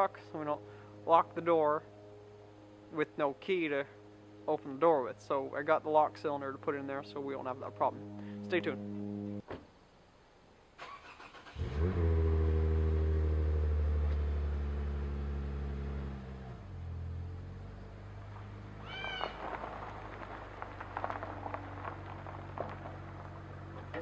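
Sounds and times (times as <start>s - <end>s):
truck engine starting and idling: 10.8s - 18.8s.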